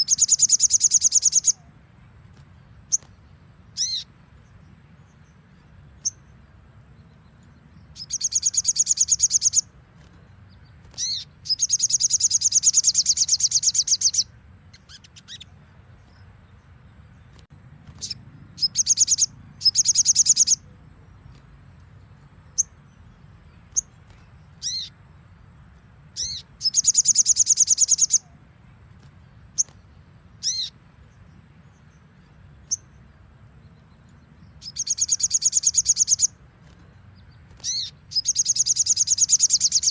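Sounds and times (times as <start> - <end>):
bird high-pitched trills: 0.0 - 1.7, 7.9 - 9.7, 10.9 - 15.6, 18.0 - 20.8, 22.5 - 25.0, 26.1 - 28.4, 30.4 - 30.8, 34.0 - 36.4, 37.2 - 39.9.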